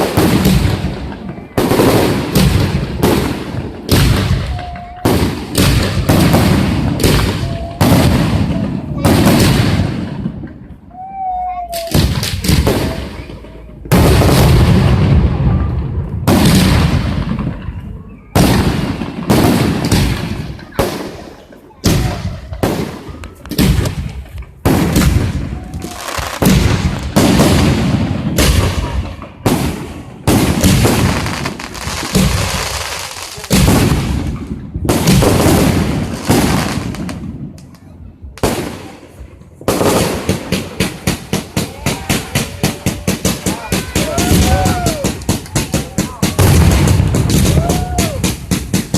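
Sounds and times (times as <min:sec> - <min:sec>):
fireworks bangs with crackling: 0:00.0 - 0:48.9
sharp firework pops: 0:11.8 - 0:14.8, 0:18.4 - 0:39.0, 0:39.7 - 0:48.9.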